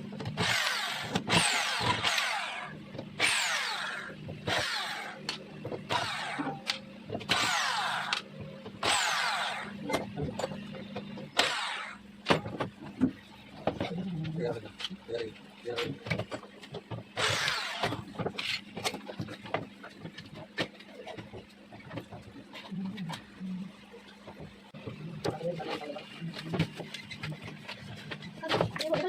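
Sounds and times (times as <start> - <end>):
power drill whining in bursts: 0.4 - 5.2, 7.3 - 8.2, 8.8 - 9.8, 17.2 - 18.0.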